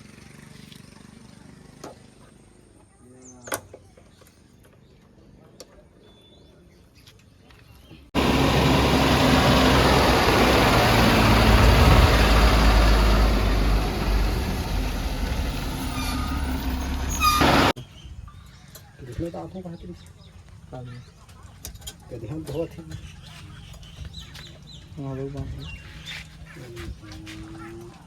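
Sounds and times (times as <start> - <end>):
diesel engine running: 8.2 - 17.8.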